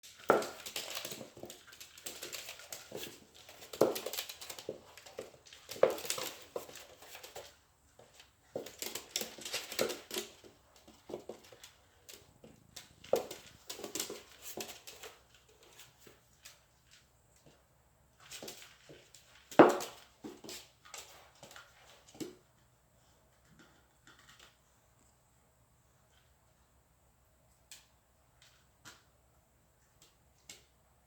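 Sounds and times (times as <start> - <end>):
scuffling and clatter: 0.0 - 22.6.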